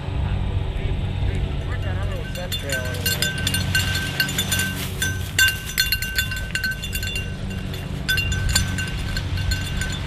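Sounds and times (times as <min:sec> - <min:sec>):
steady low rumble: 0:00.0 - 0:10.0
dog collar bell jingling: 0:02.0 - 0:10.0.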